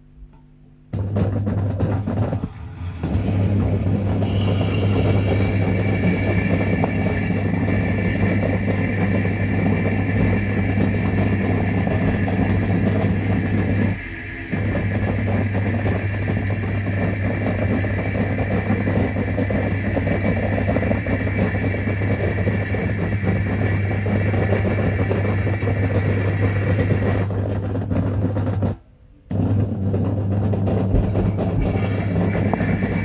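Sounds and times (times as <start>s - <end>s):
dishwasher motor hum: 0.9s - 33.0s
water spraying and splashing: 31.6s - 33.0s.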